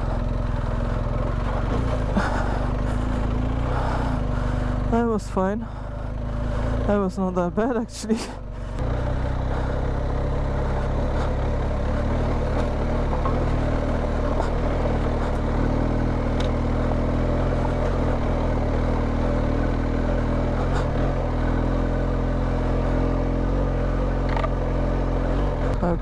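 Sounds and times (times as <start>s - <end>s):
motorcycle engine at low revs: 0.0s - 26.0s.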